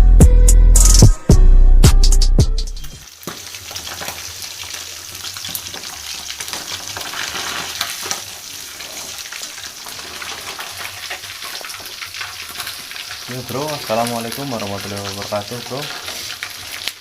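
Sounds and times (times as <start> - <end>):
music: 0.0 - 3.0
fish sizzling in hot oil: 2.9 - 17.0.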